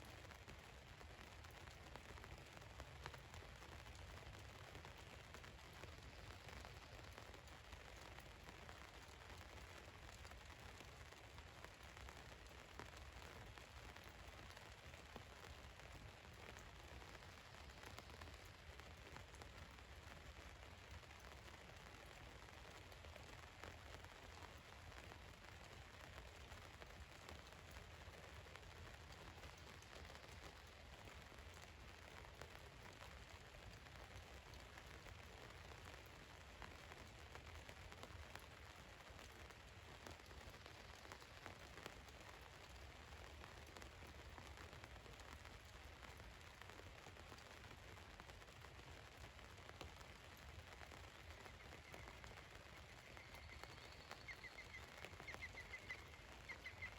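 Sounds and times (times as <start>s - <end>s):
rain pattering on van roof: 0.0s - 56.9s.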